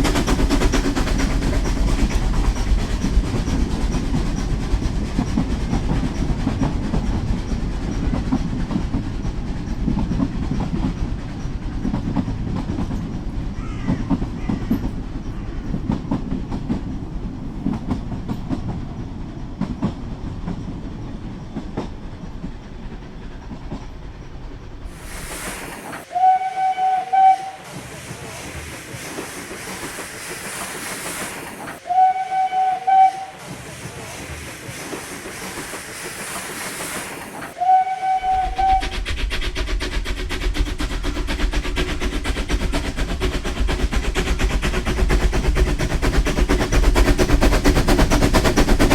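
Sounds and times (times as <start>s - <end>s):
hiss: 0.0s - 13.4s, 24.8s - 48.9s
wheels clicking over rail joints: 0.0s - 26.4s, 27.2s - 48.9s
model train rumbling: 0.0s - 48.9s
train horn blasts: 26.1s - 27.8s, 31.8s - 33.5s, 37.6s - 38.9s.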